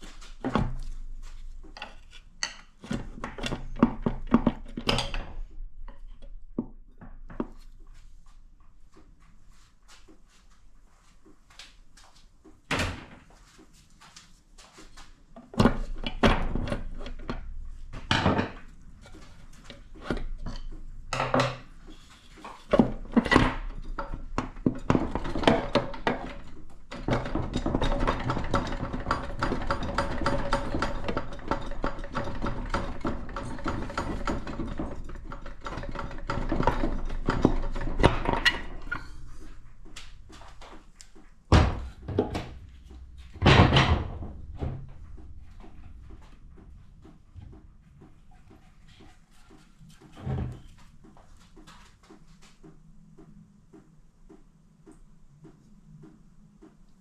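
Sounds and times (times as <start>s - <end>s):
metal tools knocking and clunking: 1.7s - 7.6s, 15.4s - 21.8s, 22.4s - 39.6s, 41.5s - 46.4s.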